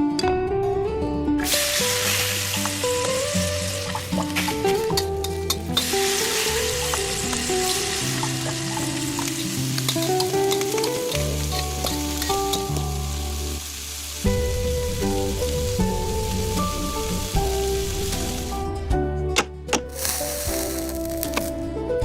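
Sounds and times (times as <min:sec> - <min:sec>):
background music with bass notes: 0:00.0 - 0:22.0
crackling noise with clicks: 0:03.8 - 0:13.0, 0:20.0 - 0:21.6.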